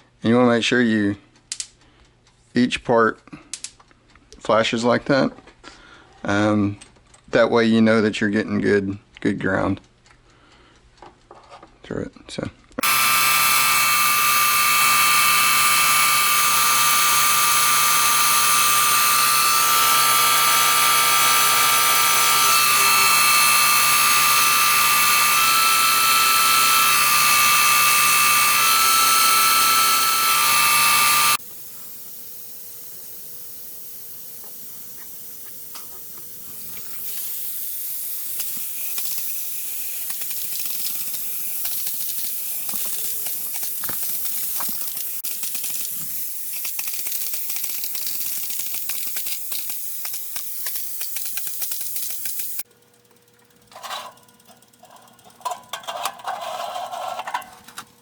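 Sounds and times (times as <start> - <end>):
loud electric whine: 12.8 - 52.7.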